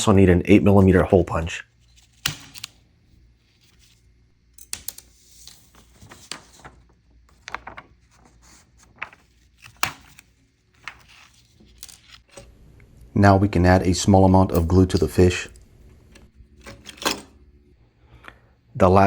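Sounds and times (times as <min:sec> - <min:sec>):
paper rustling: 0:00.8 - 0:12.6.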